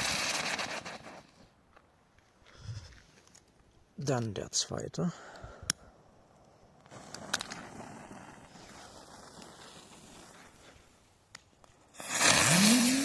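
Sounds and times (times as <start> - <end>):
firework fuse hissing: 0.0 - 1.6, 6.7 - 13.0.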